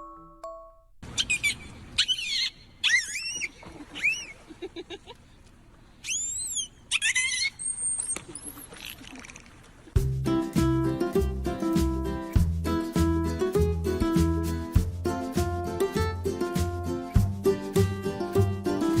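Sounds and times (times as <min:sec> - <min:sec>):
small animal chirping and squeaking: 0:01.2 - 0:04.2, 0:06.0 - 0:09.0.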